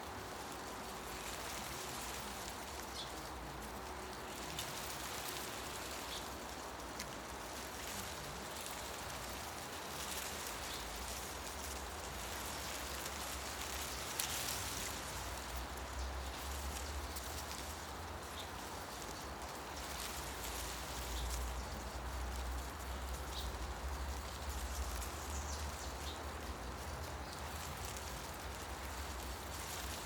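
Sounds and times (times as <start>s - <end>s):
wind rustling leaves: 0.0s - 30.0s.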